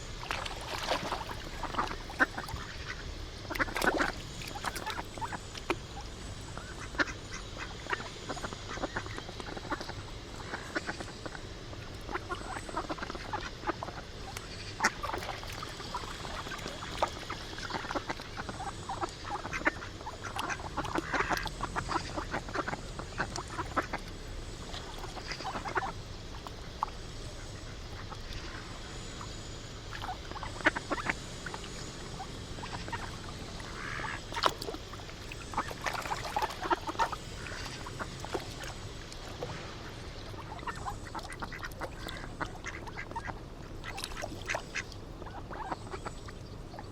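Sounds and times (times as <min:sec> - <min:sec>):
ducks quacking: 0:00.6 - 0:24.1, 0:24.7 - 0:46.9.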